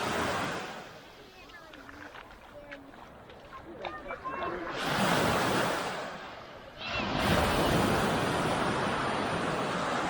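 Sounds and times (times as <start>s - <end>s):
surf breaking on sandy beach: 0.0s - 1.8s, 3.9s - 10.0s.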